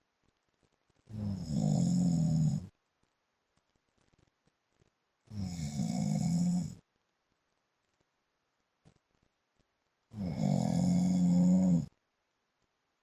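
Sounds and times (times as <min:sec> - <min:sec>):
man snoring: 0:01.1 - 0:02.7, 0:05.3 - 0:06.8, 0:10.2 - 0:11.9.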